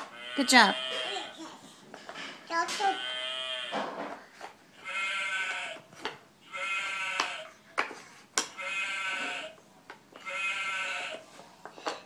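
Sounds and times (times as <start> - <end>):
recorded farm animal call: 0.0 - 1.9, 2.7 - 4.1, 4.7 - 7.7, 8.5 - 11.5.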